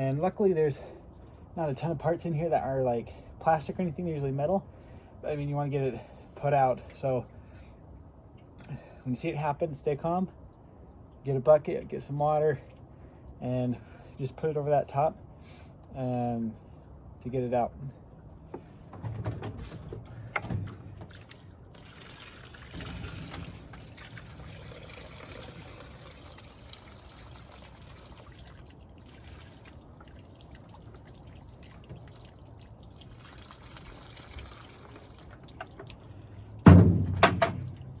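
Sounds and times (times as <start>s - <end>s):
water trickling over engine: 0.0s - 14.5s, 18.2s - 38.0s
loud thump: 36.6s - 37.7s
knocks: 36.7s - 37.7s.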